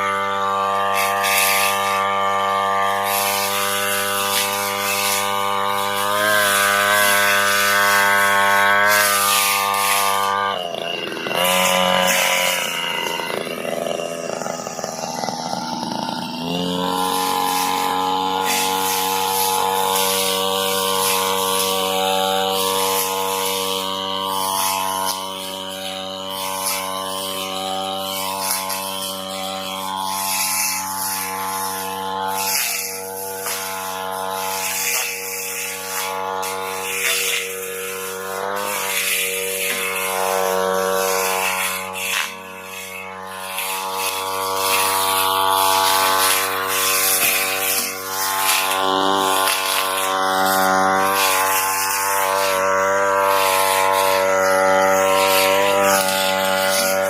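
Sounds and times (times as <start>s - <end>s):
blade swishing through grass: 0.0s - 57.0s
brush cutter engine buzzing: 0.0s - 57.0s.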